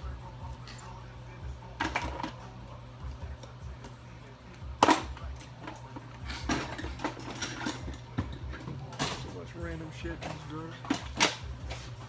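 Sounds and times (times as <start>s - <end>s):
metal hand tools clinking: 10.1s - 11.7s.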